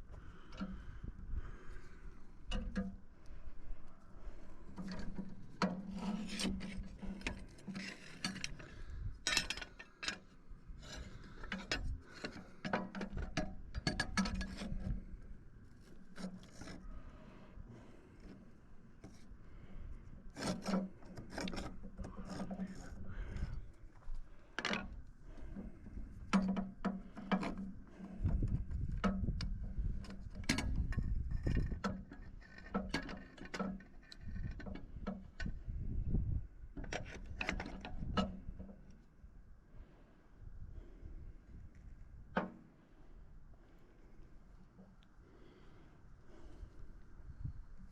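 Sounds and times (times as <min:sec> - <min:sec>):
knocks and scraping on timber: 0:04.2 - 0:38.9, 0:42.3 - 0:42.7.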